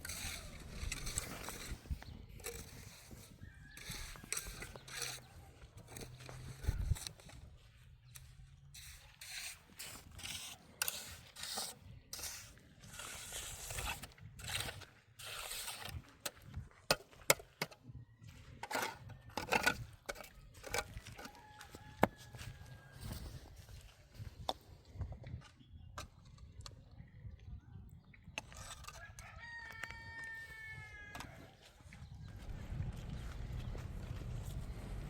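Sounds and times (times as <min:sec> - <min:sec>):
scraping and rubbing strokes: 0:00.0 - 0:07.4, 0:08.2 - 0:16.4.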